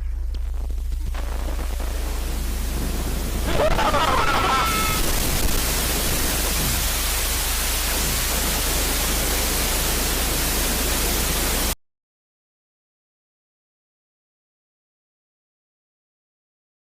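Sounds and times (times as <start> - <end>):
low hum: 0.0 - 11.8
static hiss: 0.0 - 11.8.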